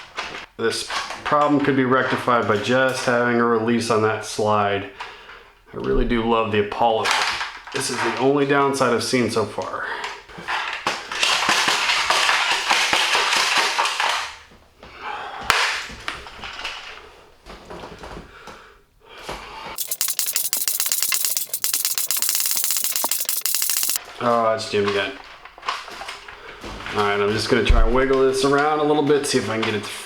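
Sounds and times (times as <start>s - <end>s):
sharp click: 19.8s - 24.0s
toy blaster priming and firing: 19.8s - 24.0s.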